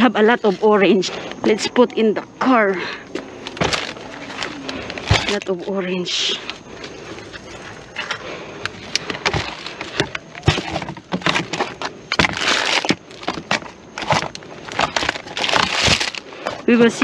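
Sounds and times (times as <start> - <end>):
plastic sacks rustling: 3.1 - 5.9, 8.8 - 17.0
sharp knocks and thuds: 5.0 - 5.4.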